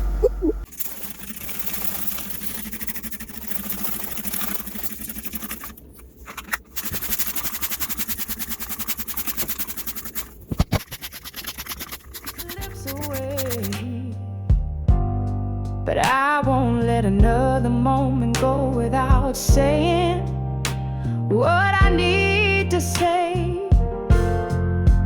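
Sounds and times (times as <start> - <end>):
small motor rattling: 0.6 - 13.8.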